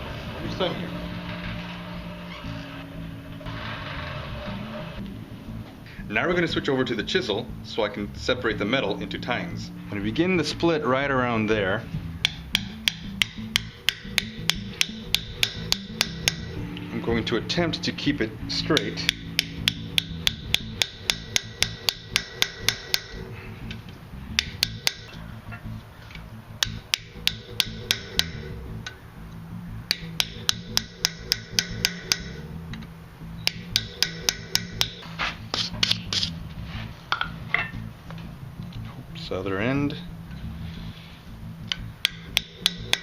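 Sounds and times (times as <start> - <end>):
background music: 0.0 - 43.0
hammer striking chisel on steel: 12.2 - 16.6, 18.7 - 23.3, 24.3 - 25.7, 26.6 - 29.0, 29.9 - 32.5, 33.4 - 36.4, 41.7 - 43.0.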